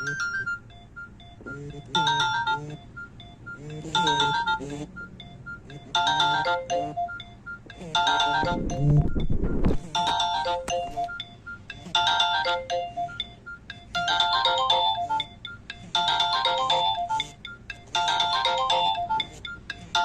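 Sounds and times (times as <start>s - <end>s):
mobile phone ringtone: 0.0s - 20.0s.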